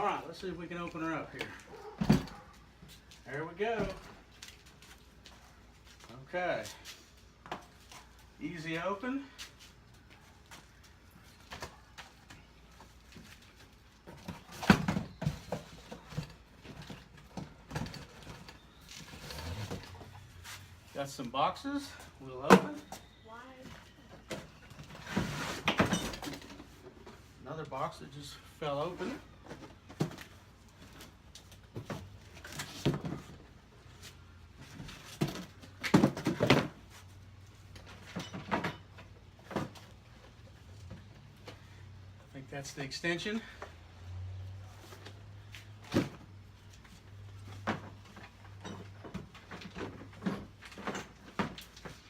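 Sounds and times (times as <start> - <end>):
cardboard boxes knocking and rustling: 34.6 - 36.8.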